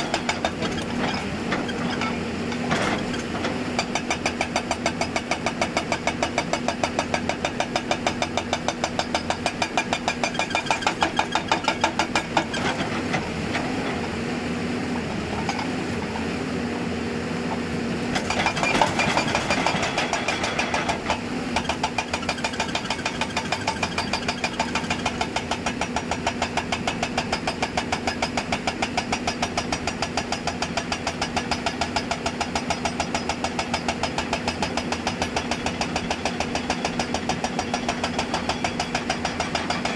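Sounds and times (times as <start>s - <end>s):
diesel engine: 0.0s - 39.9s
hydraulic breaker hammer pounding: 2.8s - 12.8s, 18.2s - 39.9s.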